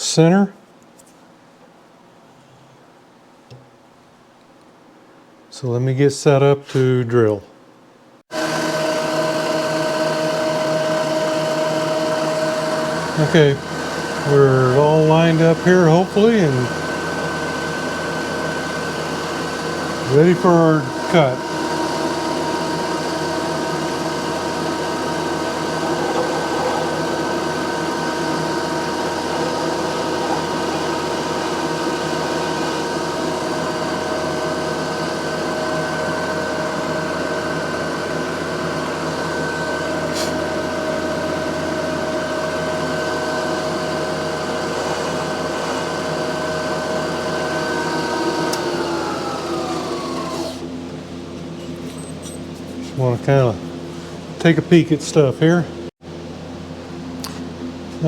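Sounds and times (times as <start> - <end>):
drill motor spinning down: 8.3 - 50.7
electric drill running: 8.4 - 50.7.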